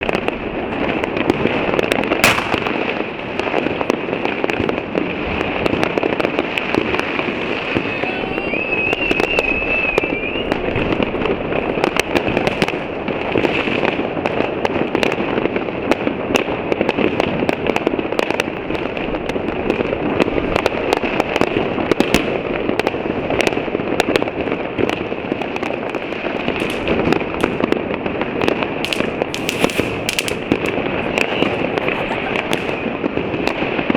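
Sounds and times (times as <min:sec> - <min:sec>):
fireworks and firecrackers banging: 0:00.0 - 0:33.9
wavering whistle: 0:08.1 - 0:10.6.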